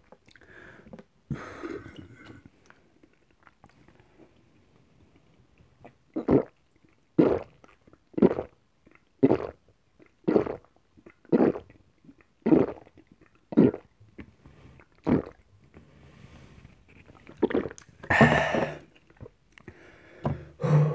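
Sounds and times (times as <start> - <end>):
gulping soda: 5.8 - 15.5, 17.1 - 19.3
voiced breath release: 19.7 - 20.9.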